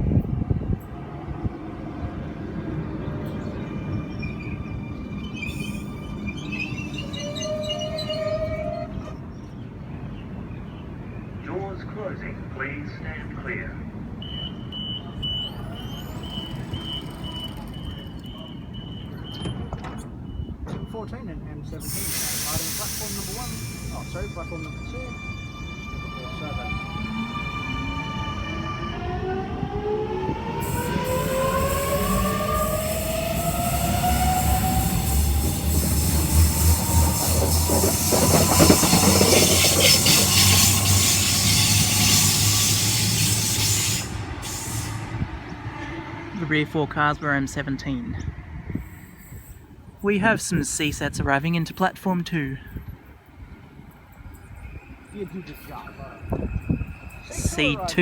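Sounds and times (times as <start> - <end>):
train low rumble: 0.0 - 58.0
train door warning beeps: 14.2 - 29.0
electric train motor whine: 15.3 - 19.1
wheels clacking over rail joints: 15.4 - 21.0, 33.1 - 43.6.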